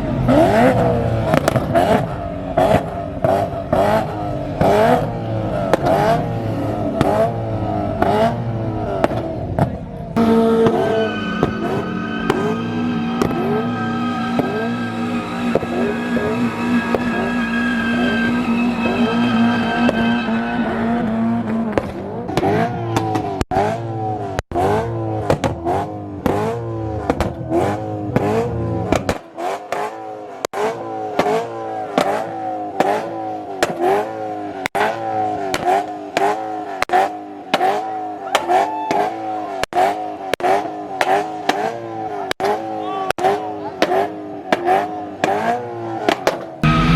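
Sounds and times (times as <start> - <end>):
car engine revving: 0.0 - 46.9
tyre squeal: 10.2 - 21.8.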